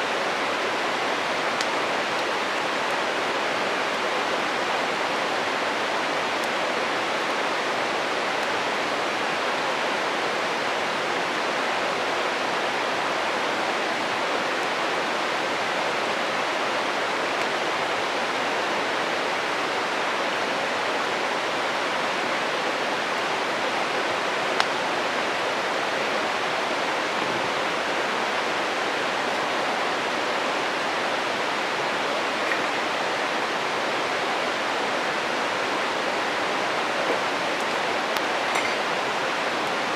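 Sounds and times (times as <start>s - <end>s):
stream rushing: 0.0s - 39.9s
campfire crack: 0.1s - 9.5s, 22.8s - 26.4s, 34.5s - 39.9s.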